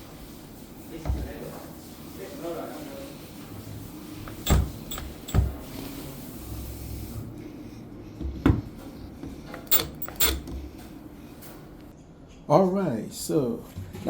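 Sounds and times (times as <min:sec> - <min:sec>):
door lock parts clicking and knocking: 0:04.3 - 0:05.6, 0:09.5 - 0:10.6.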